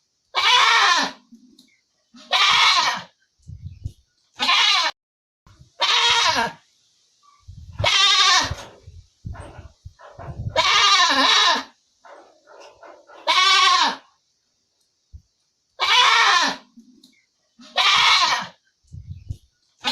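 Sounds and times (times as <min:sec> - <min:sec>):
goat bleating: 0:00.4 - 0:01.2, 0:02.2 - 0:03.1, 0:04.4 - 0:05.0, 0:05.8 - 0:06.6, 0:07.8 - 0:08.7, 0:10.5 - 0:11.8, 0:13.2 - 0:14.1, 0:15.8 - 0:16.7, 0:17.6 - 0:18.6.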